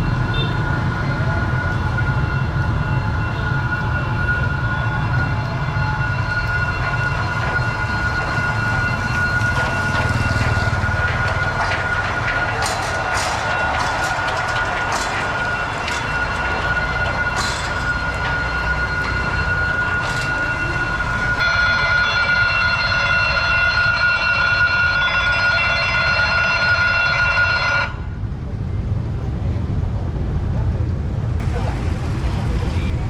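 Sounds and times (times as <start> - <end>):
crossing signal high tone: 0.0 - 28.1
train wheels clacking: 1.5 - 21.4.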